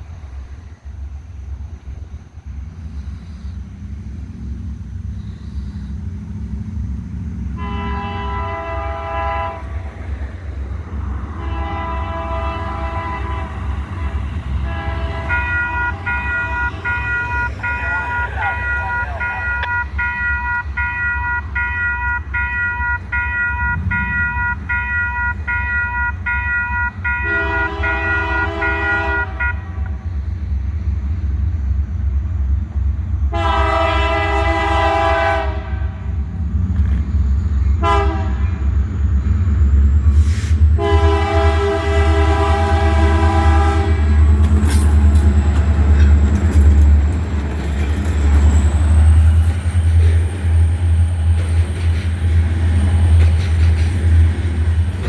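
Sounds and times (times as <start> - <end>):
train rumbling: 0.0 - 55.0
train horn blasts: 7.5 - 10.2, 11.1 - 30.2, 33.3 - 36.3, 37.7 - 38.7, 40.2 - 44.4.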